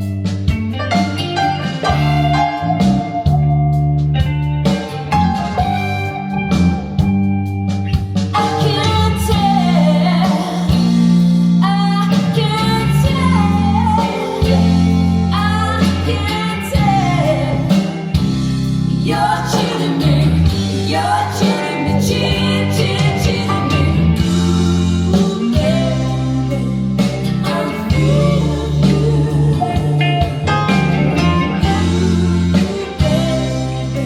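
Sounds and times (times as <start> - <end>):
drums: 0.0 - 34.0
guitar: 0.0 - 34.0
rock song over loudspeakers: 0.0 - 34.0
steady bass line: 0.0 - 34.0
person singing lead vocal: 8.4 - 18.2, 18.9 - 34.0.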